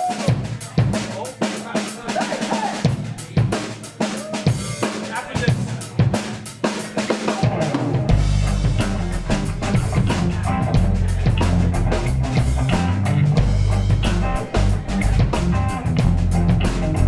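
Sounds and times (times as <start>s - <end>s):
drum kit: 0.0s - 17.0s
bass guitar: 7.3s - 17.0s
electric guitar: 7.4s - 17.0s.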